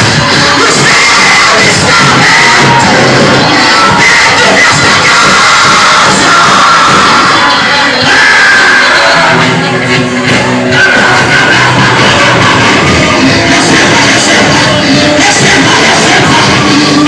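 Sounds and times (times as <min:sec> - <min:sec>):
church worship music: 0:00.0 - 0:17.0
congregation shouting and singing: 0:00.0 - 0:17.0.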